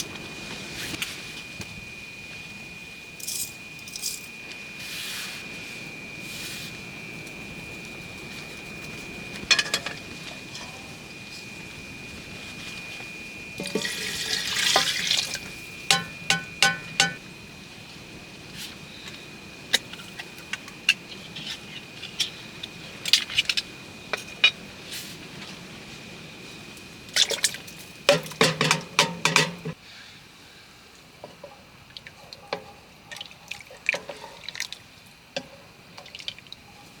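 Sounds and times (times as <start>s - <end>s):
water splashing and pouring: 13.6s - 15.5s
water drips and ticks: 31.9s - 32.5s, 36.0s - 36.6s.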